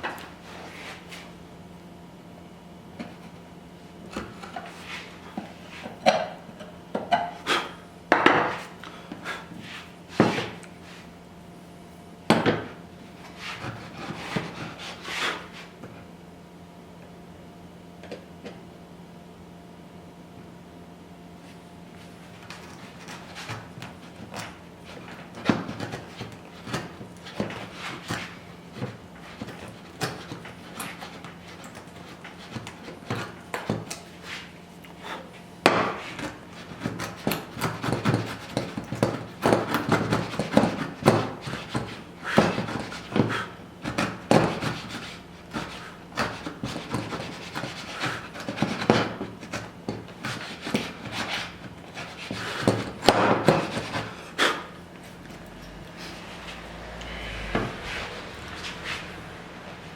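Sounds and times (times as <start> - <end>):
tools scraping wood: 22.4 - 59.1.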